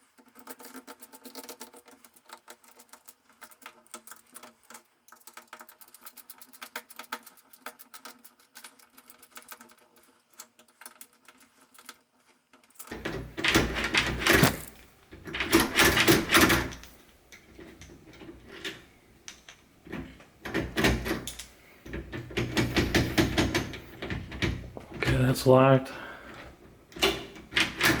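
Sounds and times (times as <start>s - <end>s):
metallic clattering and clunks: 12.9s - 25.3s, 26.3s - 28.0s
rapid fine clicking: 12.9s - 25.3s.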